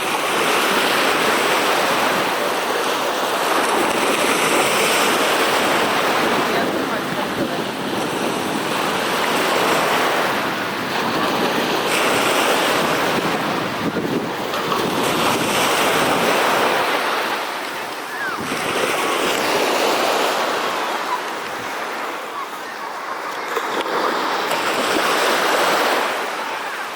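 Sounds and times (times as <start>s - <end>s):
sea waves washing: 0.0s - 26.9s
wind on microphone: 3.5s - 22.4s.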